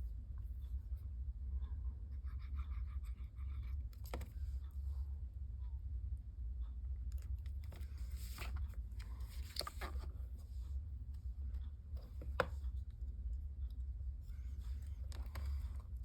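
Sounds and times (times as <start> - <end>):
steady low hum: 0.0 - 16.0
paper rustling: 7.6 - 10.2.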